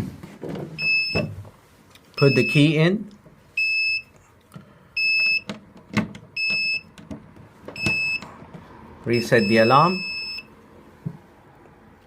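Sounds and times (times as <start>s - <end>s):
high-pitched alarm panel beeps: 0.8s - 1.3s, 2.2s - 2.7s, 3.6s - 4.1s, 5.0s - 5.5s, 6.4s - 7.0s, 7.8s - 8.3s, 9.2s - 10.5s.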